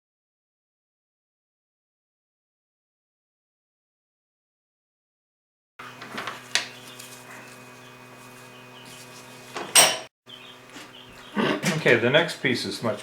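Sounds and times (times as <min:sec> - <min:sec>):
machinery electric hum: 0:05.8 - 0:13.0.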